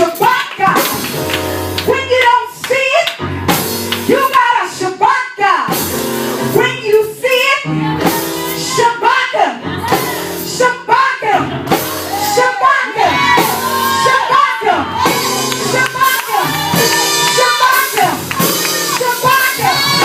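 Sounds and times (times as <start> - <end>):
band playing gospel music: 0.0 - 20.0
voices singing: 12.1 - 20.0.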